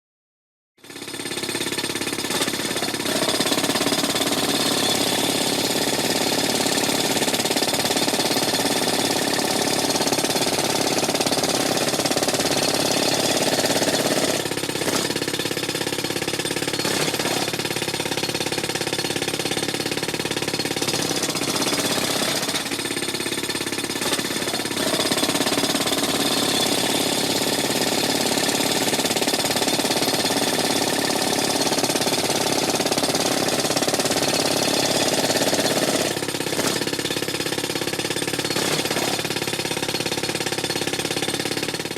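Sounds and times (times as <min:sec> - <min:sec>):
jackhammer hammering: 0:00.8 - 0:41.9.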